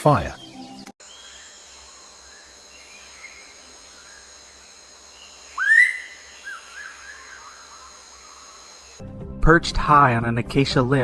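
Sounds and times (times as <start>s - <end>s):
bird whistling call: 5.5s - 7.6s.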